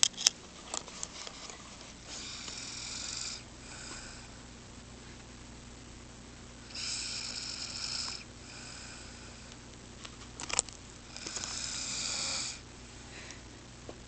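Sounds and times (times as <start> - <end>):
woman snoring: 2.1 - 4.3, 6.7 - 9.6, 11.1 - 12.6.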